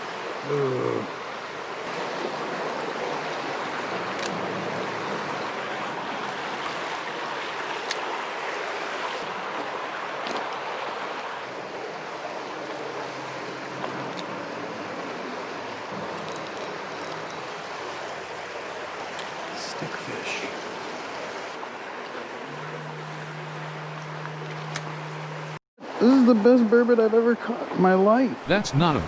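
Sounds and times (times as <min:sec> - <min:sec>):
stream water rushing: 0:00.0 - 0:29.0.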